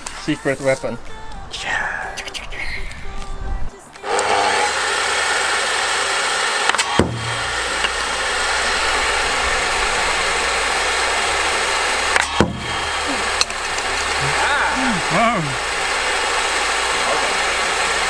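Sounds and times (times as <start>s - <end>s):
table saw running: 4.0s - 18.0s
sharp knock: 6.7s - 9.3s, 12.2s - 13.7s.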